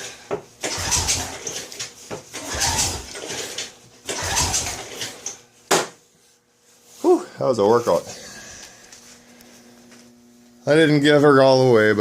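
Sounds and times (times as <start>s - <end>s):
recoil starter pull cranking engine: 0.6s - 5.4s.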